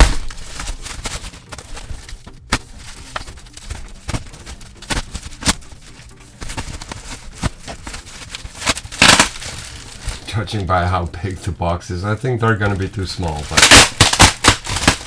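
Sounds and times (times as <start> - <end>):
bubble wrap clicks and crackles: 0.0 - 11.2, 12.5 - 15.0
plastic packaging crinkling: 0.0 - 11.4, 12.3 - 15.0.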